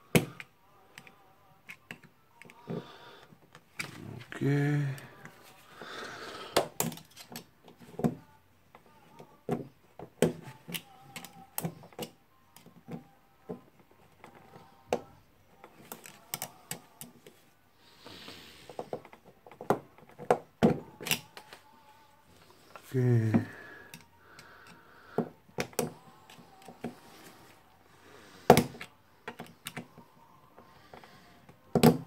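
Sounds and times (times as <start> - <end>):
screwdriver clicking on metal: 10.2 - 12.7, 28.5 - 29.9.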